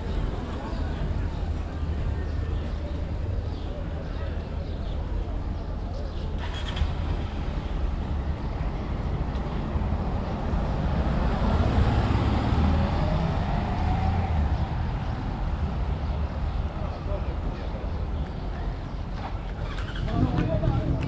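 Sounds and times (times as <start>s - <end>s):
vehicle passing by: 10.6s - 15.2s.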